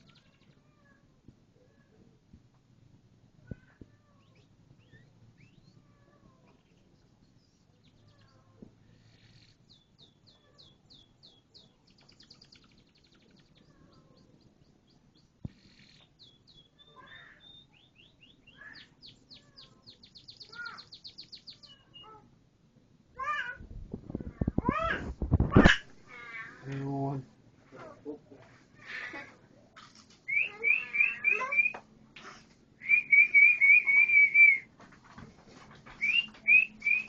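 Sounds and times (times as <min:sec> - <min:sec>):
canary singing: 0:04.0 - 0:22.3, 0:30.3 - 0:31.8, 0:32.8 - 0:34.7, 0:36.0 - 0:37.0.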